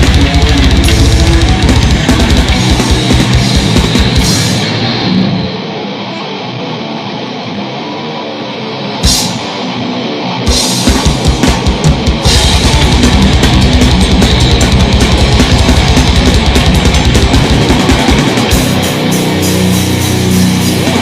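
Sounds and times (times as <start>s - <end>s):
fast kick drum beat: 0.0s - 4.5s, 10.8s - 19.4s
heavy metal band playing live: 0.0s - 21.0s.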